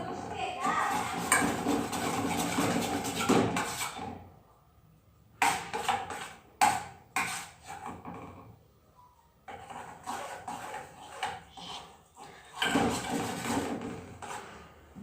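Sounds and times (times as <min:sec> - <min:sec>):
utensils clattering against pot: 0:00.0 - 0:04.2, 0:09.5 - 0:14.6.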